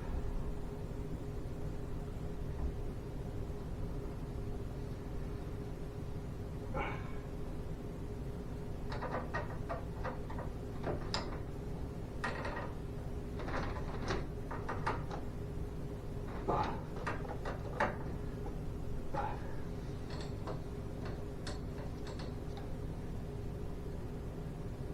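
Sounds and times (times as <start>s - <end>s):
steady low hum: 0.0s - 24.9s
tools clicking and clattering: 8.9s - 11.5s, 12.2s - 12.8s, 13.4s - 15.3s, 16.3s - 18.6s, 19.8s - 22.8s.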